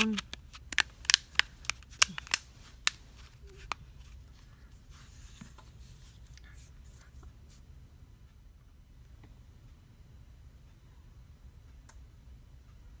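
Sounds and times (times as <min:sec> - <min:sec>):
plastic clips snapping in: 0:00.0 - 0:03.0.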